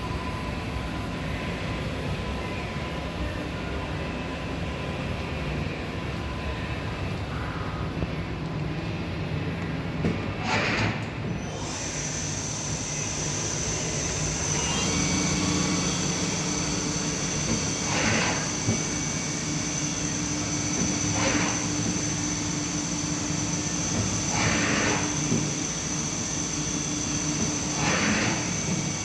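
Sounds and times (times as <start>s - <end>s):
high machine whine: 0.0s - 29.0s
lathe machine hum: 11.4s - 29.0s
lower machine tone: 11.5s - 29.0s.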